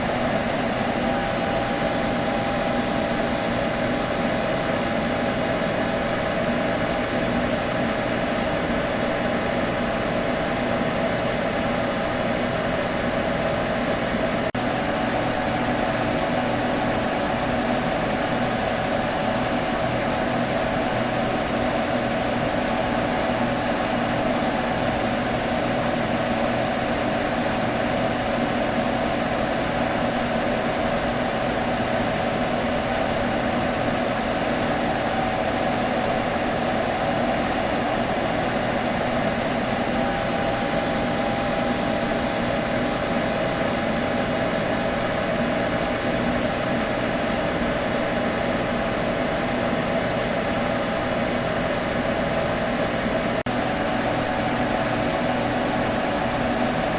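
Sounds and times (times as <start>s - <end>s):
computer fan humming: 0.0s - 56.9s.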